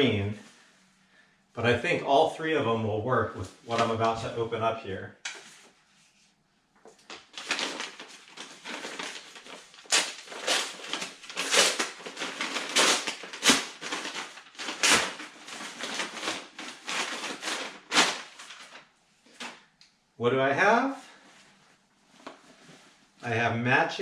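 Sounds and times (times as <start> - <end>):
packaging rustling and crinkling: 6.8 - 19.7.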